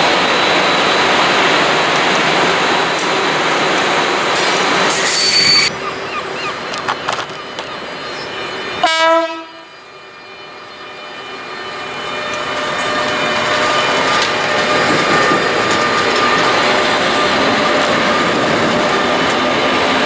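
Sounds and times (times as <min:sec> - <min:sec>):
rush of passing train: 0:00.0 - 0:20.0
wheels running on rails: 0:01.0 - 0:08.8, 0:11.9 - 0:20.0
train horn blast: 0:08.6 - 0:12.4.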